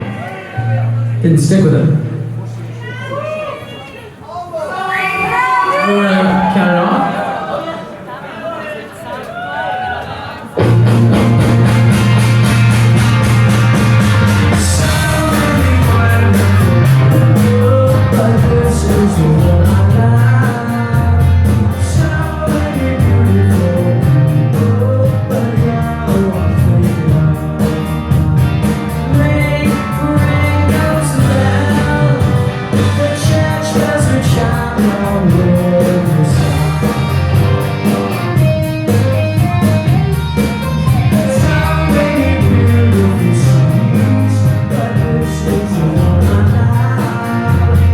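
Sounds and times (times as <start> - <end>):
bass guitar: 10.6 - 47.9
drum kit: 10.6 - 47.9
electric guitars: 10.6 - 47.9
person singing: 14.2 - 37.3, 40.9 - 47.9.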